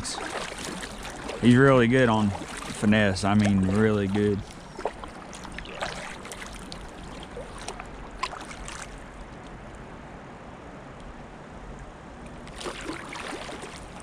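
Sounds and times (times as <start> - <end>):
sharp knocks or splashes: 0.0 - 9.0, 12.4 - 14.0
creek water trickling: 0.0 - 9.9, 12.2 - 14.0.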